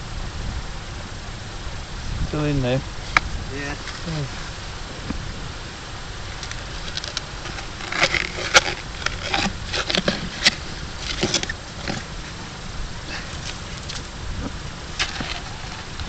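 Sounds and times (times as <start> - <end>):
spade scraping wet sand and stones: 6.4 - 12.2, 14.9 - 16.0.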